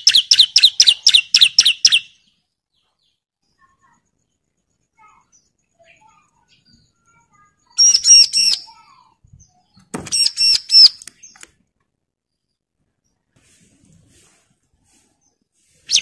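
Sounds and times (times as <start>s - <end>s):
bird sharp high calls: 0.0s - 2.3s, 5.0s - 11.6s, 15.8s - 16.0s.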